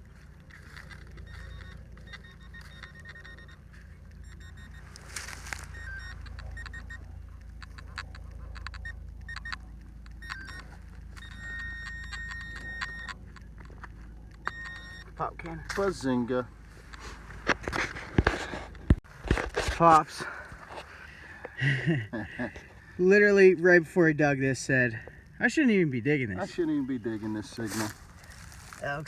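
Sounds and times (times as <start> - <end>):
metal detector beeping: 0.0 - 18.6, 26.4 - 28.9.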